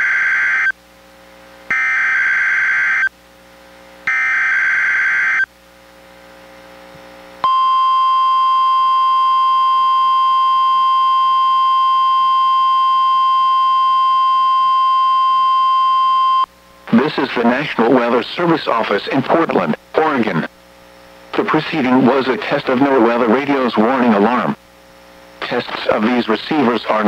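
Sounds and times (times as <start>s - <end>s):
steady warning alarm tone: 0.0s - 0.8s, 1.7s - 3.1s, 4.1s - 5.5s, 7.4s - 18.6s.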